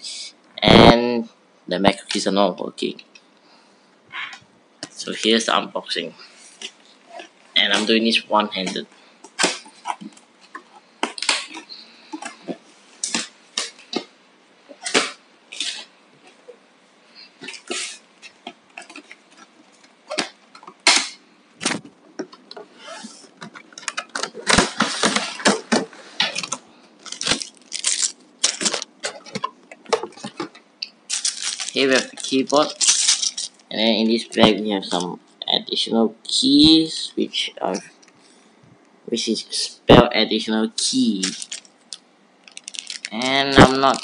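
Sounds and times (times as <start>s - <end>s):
packaging rustling and scraping: 17.3s - 21.0s, 21.6s - 35.0s, 41.1s - 44.0s.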